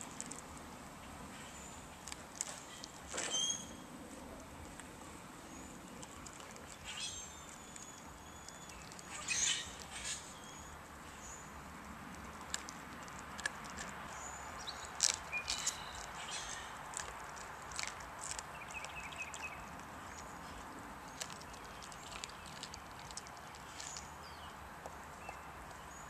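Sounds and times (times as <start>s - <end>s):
dog chewing bones: 0.0s - 3.6s, 4.2s - 10.2s, 11.6s - 25.8s.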